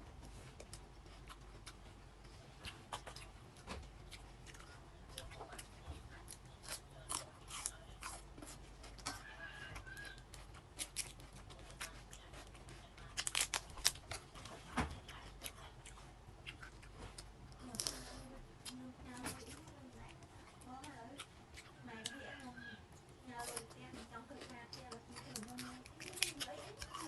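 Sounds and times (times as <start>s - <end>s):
chewing and mouth sounds: 0.2s - 27.0s
crab shells cracking: 13.0s - 14.4s, 24.8s - 27.0s.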